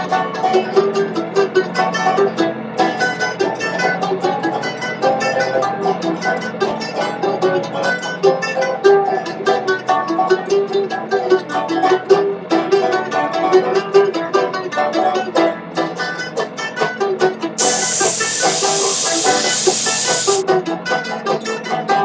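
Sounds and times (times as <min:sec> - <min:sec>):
loud steady hiss: 0:17.6 - 0:20.4.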